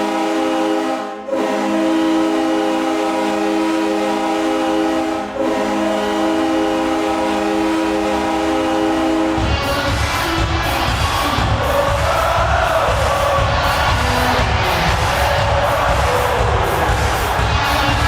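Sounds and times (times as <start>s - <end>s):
arena goal horn blasts: 0.0s - 18.0s
crowd cheering: 0.0s - 18.0s
goal song music: 5.4s - 18.0s.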